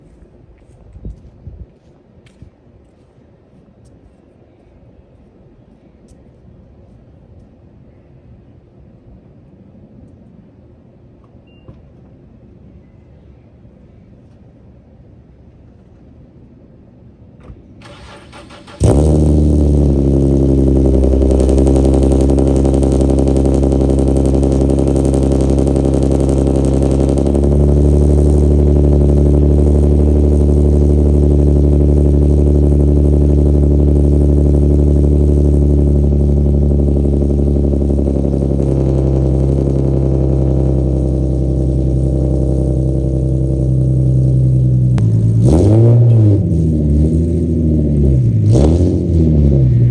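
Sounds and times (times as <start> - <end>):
engine throttle blip: 17.4 - 47.0
car engine starting and idling: 17.4 - 49.9.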